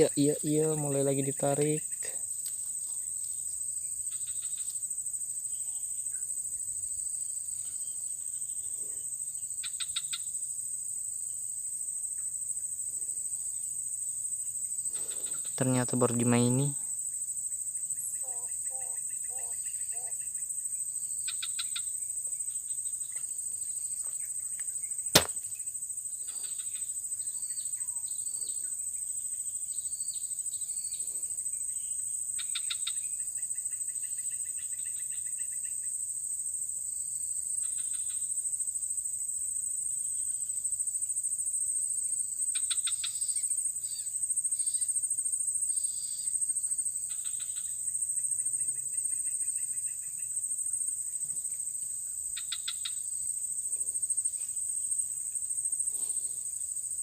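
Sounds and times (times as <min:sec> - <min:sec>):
high-pitched insect drone: 0:00.0 - 0:36.7, 0:37.4 - 0:57.0
sharp click: 0:25.1 - 0:25.4.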